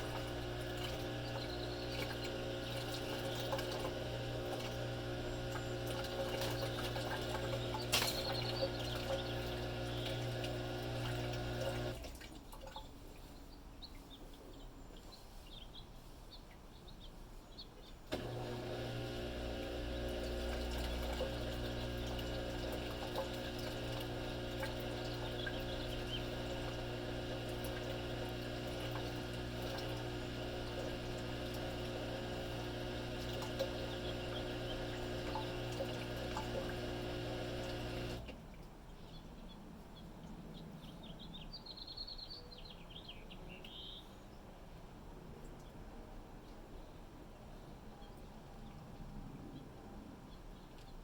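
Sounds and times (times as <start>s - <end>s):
washing machine hum: 0.0s - 12.8s, 18.1s - 38.6s
water sloshing: 0.0s - 12.9s.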